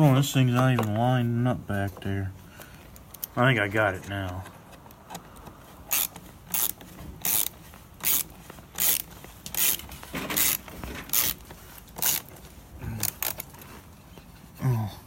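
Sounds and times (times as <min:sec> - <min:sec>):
socket ratchet clicking: 0:05.0 - 0:11.4, 0:12.0 - 0:12.3.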